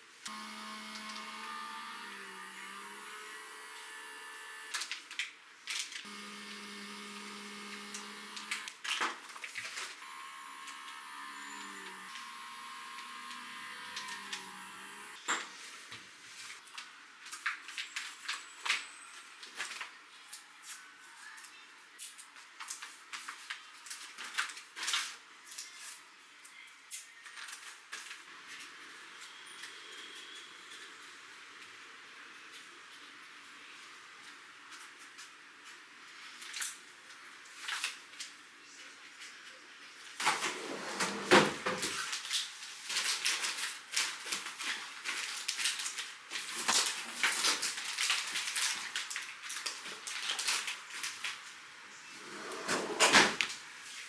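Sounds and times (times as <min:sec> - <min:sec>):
plastic packaging crinkling: 0:41.9 - 0:51.5.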